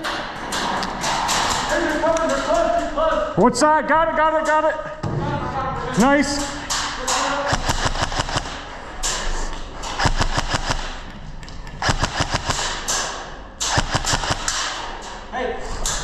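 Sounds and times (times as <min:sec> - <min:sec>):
airsoft gun bursts: 0:07.4 - 0:08.7, 0:09.9 - 0:11.1, 0:11.8 - 0:14.8.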